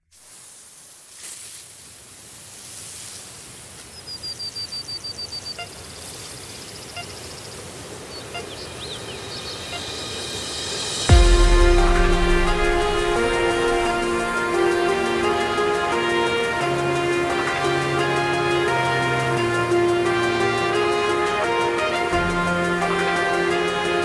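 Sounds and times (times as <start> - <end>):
steady low rush: 8.7 - 24.0
run of high notes: 9.6 - 24.0.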